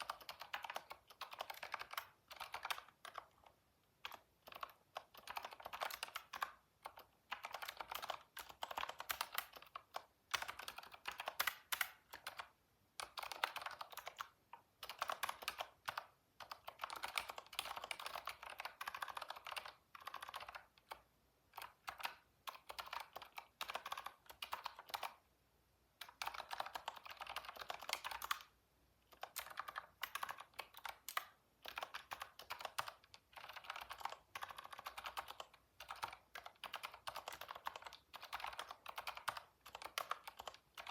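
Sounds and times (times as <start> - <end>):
typing on computer keyboard: 0.0 - 25.2, 26.0 - 40.9.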